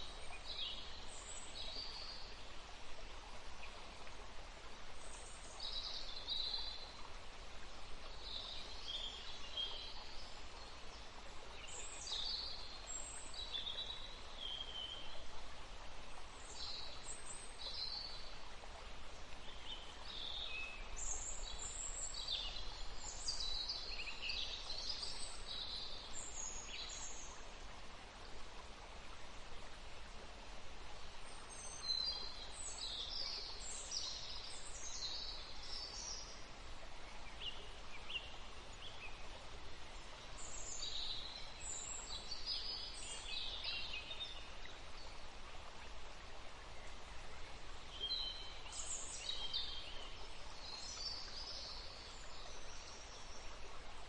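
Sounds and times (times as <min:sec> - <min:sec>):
faint background hiss: 0:00.0 - 0:54.0.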